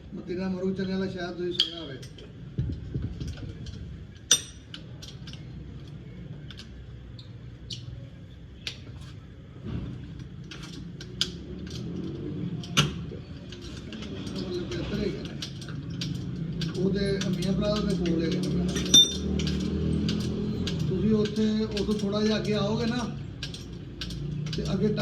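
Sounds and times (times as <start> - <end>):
hand tools clicking on metal: 1.5 - 2.3, 3.6 - 5.4, 13.5 - 25.0.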